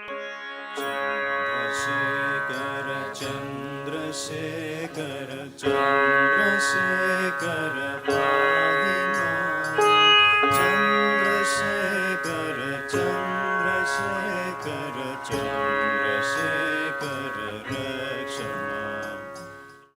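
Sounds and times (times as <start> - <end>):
plucked strings: 0.0 - 19.9
held drone: 0.8 - 19.8.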